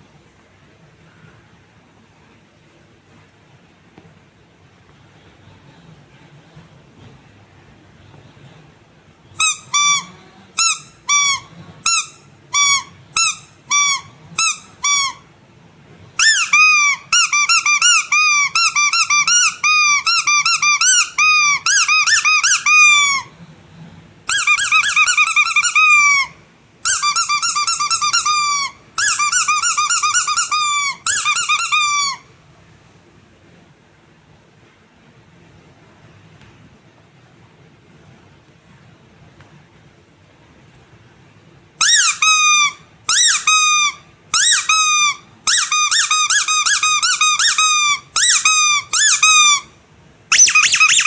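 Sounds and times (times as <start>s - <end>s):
rubber toy squeaking: 9.4s - 15.3s, 16.2s - 23.3s, 24.3s - 32.3s, 41.8s - 49.7s, 50.3s - 51.0s.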